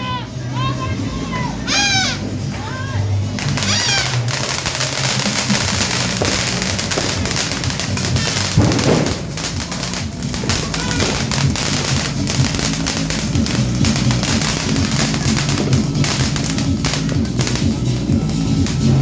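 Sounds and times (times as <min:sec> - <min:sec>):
background music: 0:00.0 - 0:19.0
firecrackers crackling and popping: 0:00.0 - 0:19.0
loud firework bang: 0:03.4 - 0:17.6.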